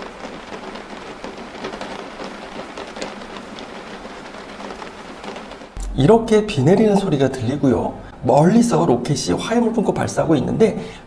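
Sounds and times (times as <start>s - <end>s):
steady rain falling: 0.0s - 11.0s.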